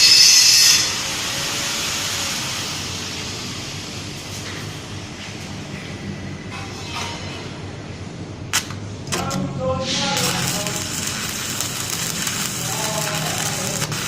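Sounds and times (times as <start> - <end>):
welding arc crackling: 0.0 - 3.4, 8.5 - 14.0.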